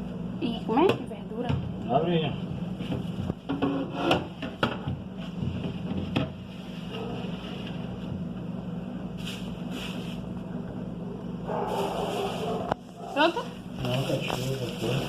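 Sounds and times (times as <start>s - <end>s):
steady low hum: 0.0s - 15.0s
rustling of groceries: 5.1s - 8.3s, 9.1s - 10.6s, 11.5s - 15.0s.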